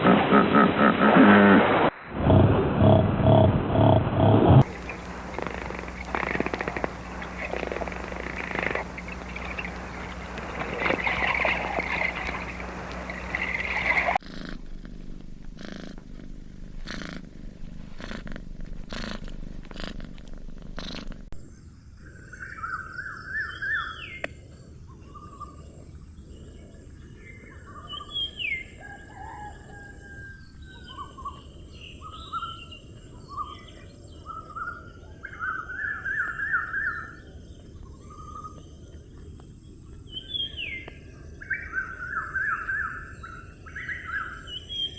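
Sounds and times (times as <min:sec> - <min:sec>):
rough animal sound: 0:00.0 - 0:21.4.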